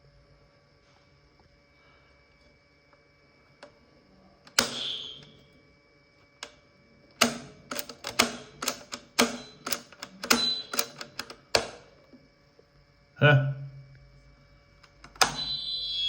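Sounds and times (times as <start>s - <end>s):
sharp click: 4.5s - 5.3s.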